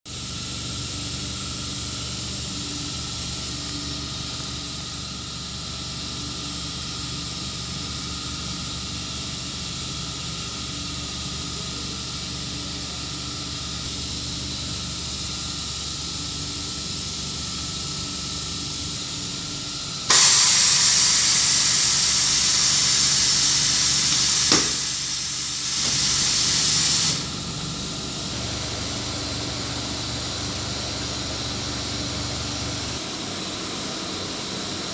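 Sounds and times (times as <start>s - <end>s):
air hissing: 11.5s - 33.0s
sharp click: 24.5s - 24.8s.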